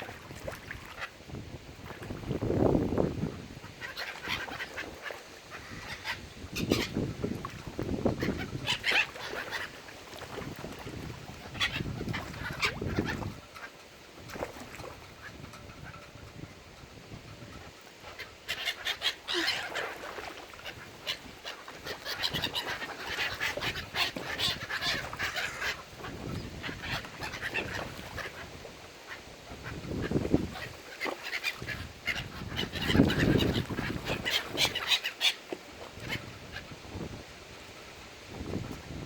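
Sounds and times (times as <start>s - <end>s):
ducks quacking: 3.7s - 7.0s, 17.4s - 28.5s, 29.1s - 35.4s.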